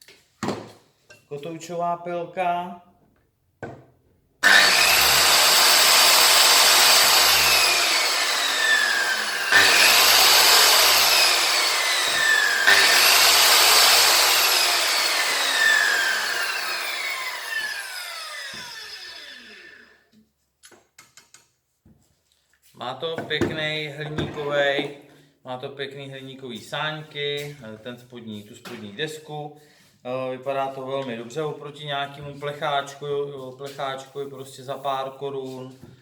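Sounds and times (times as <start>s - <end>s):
circular saw whining: 4.4s - 20.0s.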